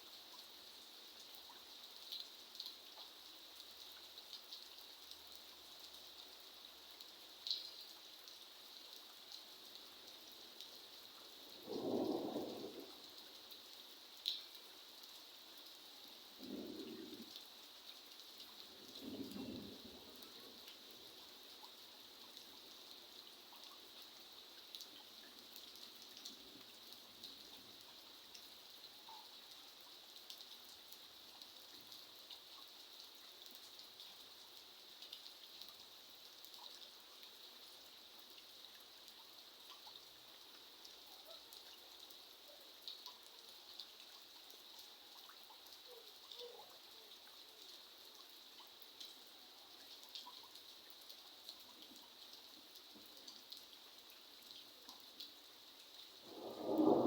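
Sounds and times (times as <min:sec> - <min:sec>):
soft steady rain: 0:00.0 - 0:57.0
raindrops ticking: 0:07.0 - 0:37.4, 0:38.3 - 0:57.0.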